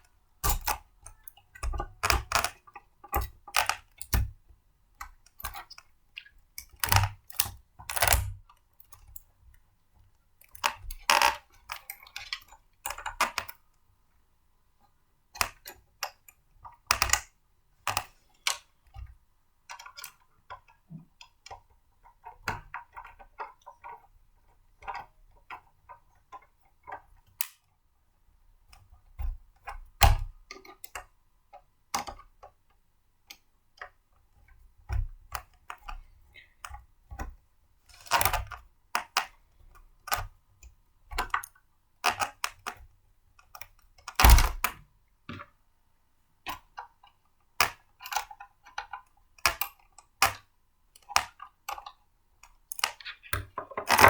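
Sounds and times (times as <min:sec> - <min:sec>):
blender parts clicking and knocking: 0:52.7 - 0:54.0.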